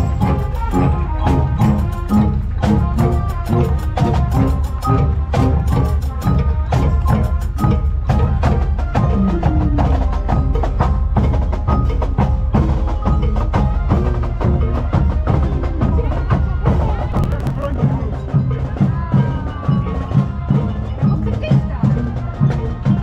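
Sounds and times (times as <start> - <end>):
music with fast percussion: 0.0 - 23.0.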